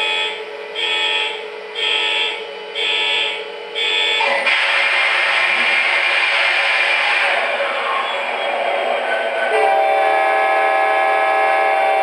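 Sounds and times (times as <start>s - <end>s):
steady hum: 0.0s - 12.0s
train horn with hiss: 9.5s - 12.0s.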